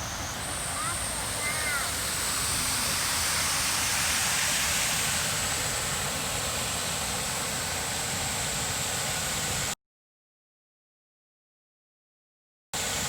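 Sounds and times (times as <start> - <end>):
waterfall rushing: 0.0 - 5.9.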